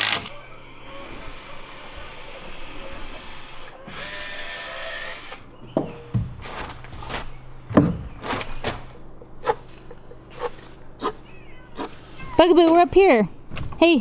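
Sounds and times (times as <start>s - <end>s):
power tool whirring: 0.0s - 0.3s, 3.3s - 7.3s.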